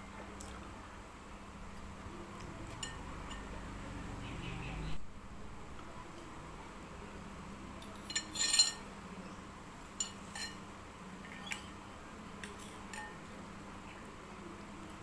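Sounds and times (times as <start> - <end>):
utensil clinking against bowl: 2.7 - 3.6, 7.8 - 8.8, 10.0 - 10.6.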